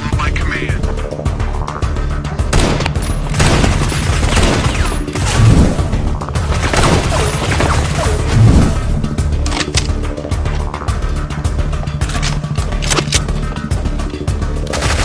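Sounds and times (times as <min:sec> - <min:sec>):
action background music: 0:00.0 - 0:15.0
gunfire: 0:02.5 - 0:05.9, 0:06.5 - 0:08.8.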